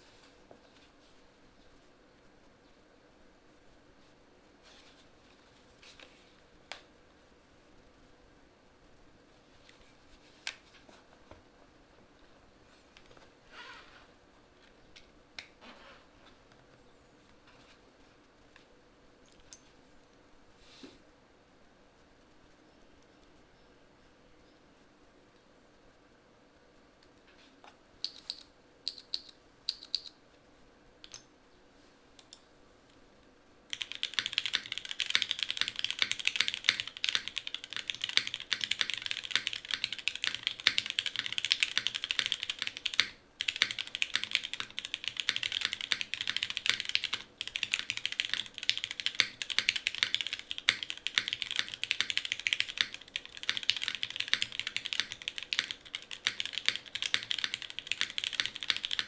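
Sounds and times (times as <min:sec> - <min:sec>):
mechanical keyboard typing: 0:28.1 - 0:30.1, 0:33.7 - 0:59.0.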